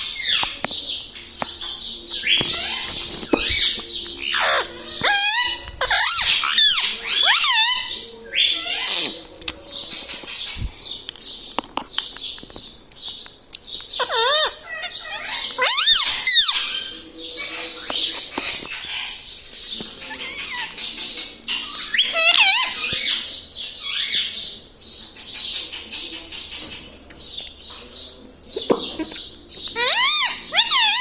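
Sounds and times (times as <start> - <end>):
parrot screeching and chattering: 0.0 - 9.2, 13.9 - 19.4, 20.0 - 23.2, 28.8 - 31.0.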